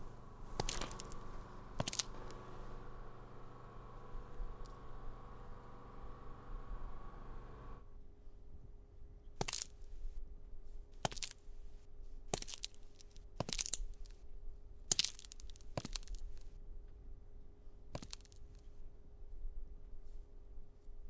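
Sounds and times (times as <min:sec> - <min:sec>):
short crunching noises: 0:00.0 - 0:07.8
humming tone: 0:00.0 - 0:07.9
faint steady hum: 0:00.0 - 0:09.0.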